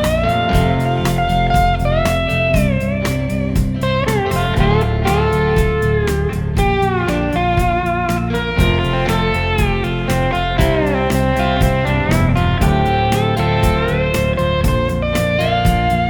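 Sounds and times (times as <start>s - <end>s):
lead electric guitar: 0.0s - 16.0s
steady drum beat: 0.0s - 16.0s.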